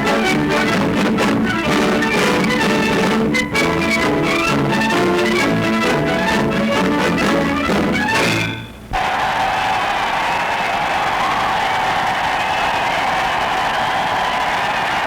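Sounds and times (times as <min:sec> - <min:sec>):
brass band playing lively tune: 0:00.0 - 0:08.7.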